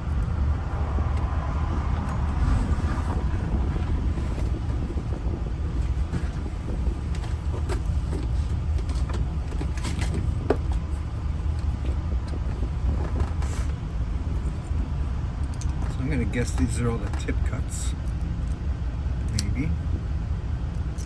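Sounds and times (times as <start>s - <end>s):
vehicle engine idling: 0.0s - 21.0s.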